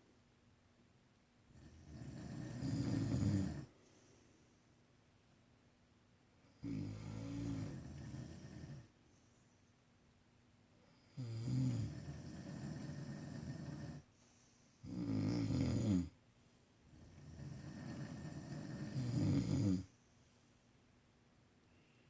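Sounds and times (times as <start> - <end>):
men snoring: 1.7 - 3.7, 6.6 - 8.9, 11.2 - 14.0, 14.8 - 16.1, 17.2 - 19.9.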